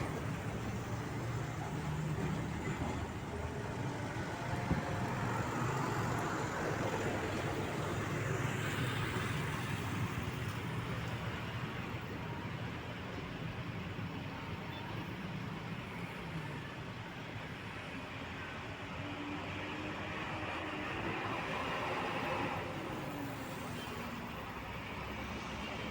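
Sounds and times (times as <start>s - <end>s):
road traffic noise: 0.0s - 25.9s
truck engines running: 0.0s - 25.9s.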